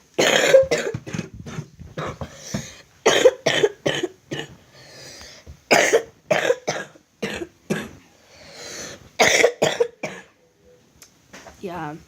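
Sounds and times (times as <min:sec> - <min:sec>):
boy coughing: 0:00.2 - 0:04.5, 0:05.7 - 0:08.0, 0:09.2 - 0:10.4.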